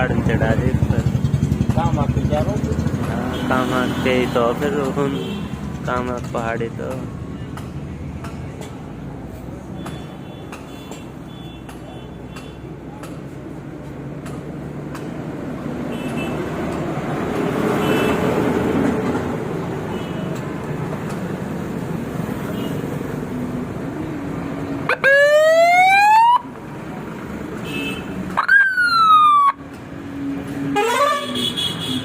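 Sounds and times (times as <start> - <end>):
motorcycle engine running: 0.0 - 3.4
electronic police siren: 24.9 - 26.5, 28.4 - 29.6.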